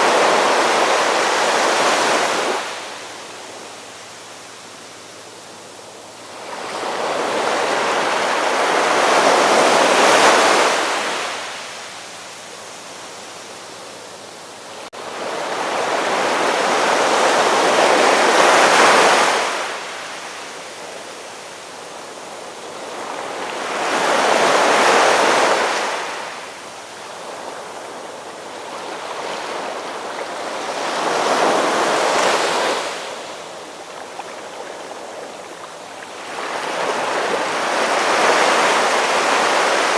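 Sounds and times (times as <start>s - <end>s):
ocean waves breaking: 0.0s - 13.8s, 14.6s - 39.9s.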